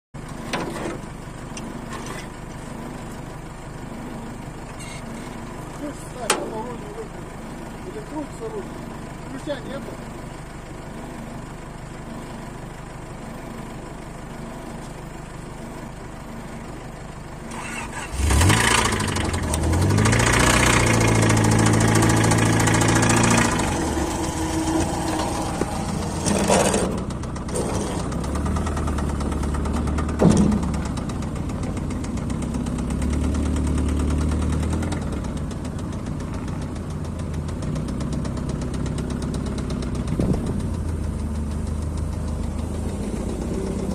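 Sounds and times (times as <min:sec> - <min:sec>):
car engine cranking and starting: 0:00.2 - 0:43.9
engine revving and idling: 0:00.2 - 0:43.9
engine knocking: 0:17.5 - 0:43.9.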